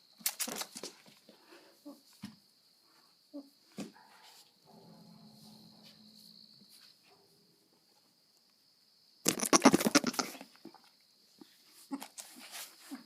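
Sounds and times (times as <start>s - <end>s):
goat rasping: 9.4s - 10.4s.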